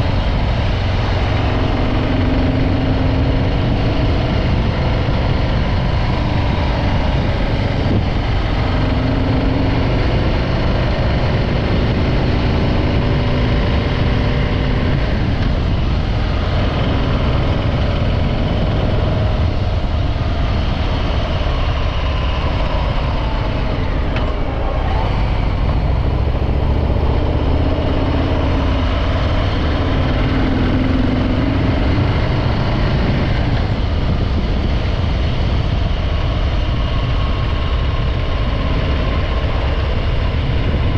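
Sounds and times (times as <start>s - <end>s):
motorcycle engine riding: 0.0s - 40.9s.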